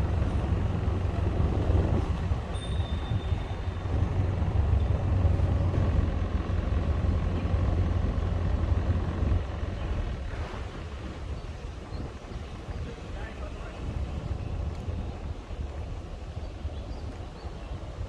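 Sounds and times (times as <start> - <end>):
boat engine droning: 0.0 - 11.9
rushing water: 0.0 - 14.4
wind: 0.0 - 18.0.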